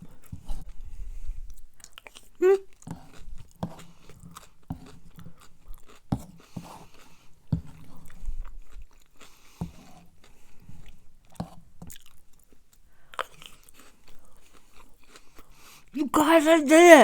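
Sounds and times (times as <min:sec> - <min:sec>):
close chewing with wet mouth sounds: 0:00.0 - 0:16.0.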